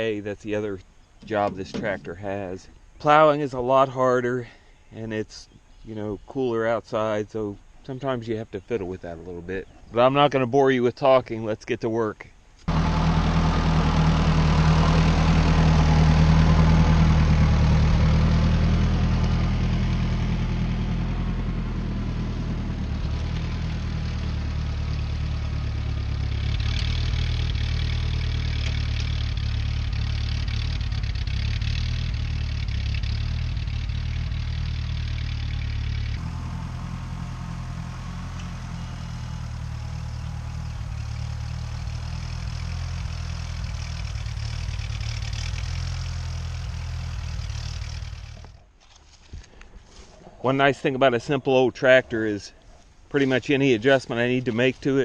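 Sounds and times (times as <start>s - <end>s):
tractor engine running: 0.0s - 3.5s, 12.6s - 50.0s.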